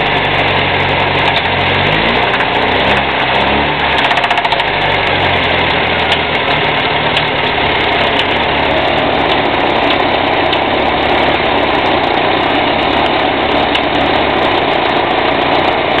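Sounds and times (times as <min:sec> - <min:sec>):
engine knocking: 0:00.0 - 0:16.0
petrol engine idling: 0:00.0 - 0:16.0.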